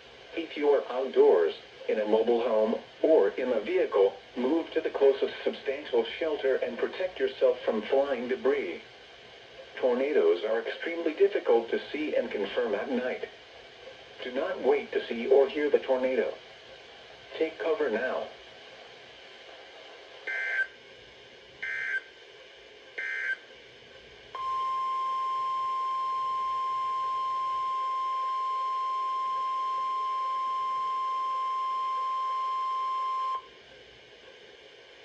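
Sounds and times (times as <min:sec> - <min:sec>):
steady warning alarm tone: 0:20.3 - 0:20.7, 0:21.6 - 0:22.1, 0:23.0 - 0:23.4, 0:24.4 - 0:33.5.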